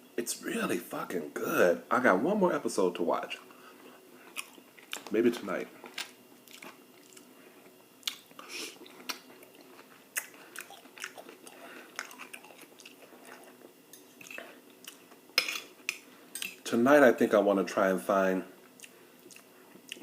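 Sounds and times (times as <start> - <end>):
person chewing food: 3.8 - 5.1, 5.8 - 16.6, 18.7 - 20.0.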